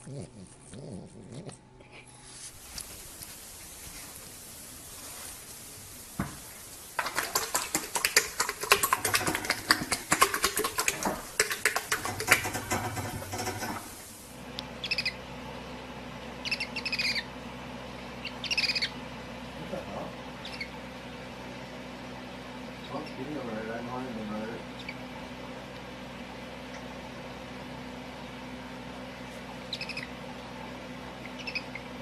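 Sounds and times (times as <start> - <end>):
low steady hum: 0.0 - 32.0
animal chirping: 14.8 - 15.2, 16.4 - 17.3, 18.2 - 19.0, 20.4 - 20.8, 29.7 - 30.2, 31.2 - 31.9.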